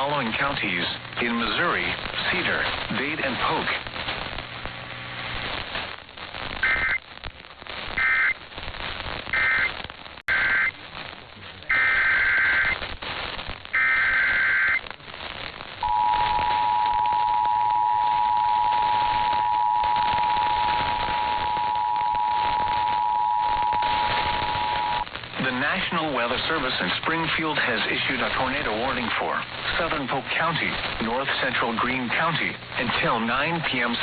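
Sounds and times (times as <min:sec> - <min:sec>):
radio static: 0:00.0 - 0:34.0
digital data bursts: 0:06.3 - 0:07.1, 0:07.8 - 0:10.8, 0:11.7 - 0:28.9
two-tone attention signal: 0:15.8 - 0:25.0.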